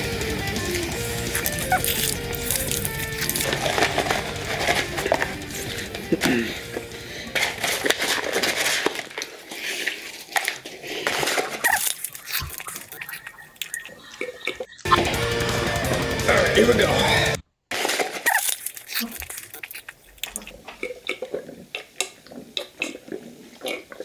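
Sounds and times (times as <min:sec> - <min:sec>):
background music: 0:00.0 - 0:07.9, 0:14.9 - 0:17.4
crunching and chewing: 0:00.0 - 0:16.0, 0:17.7 - 0:24.0
paper wrappers crinkling: 0:00.5 - 0:14.1, 0:17.7 - 0:21.0.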